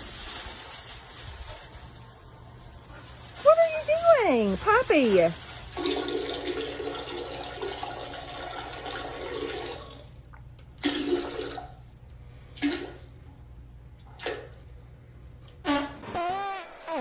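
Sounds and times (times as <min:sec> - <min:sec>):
running water gushing: 0:03.5 - 0:10.1.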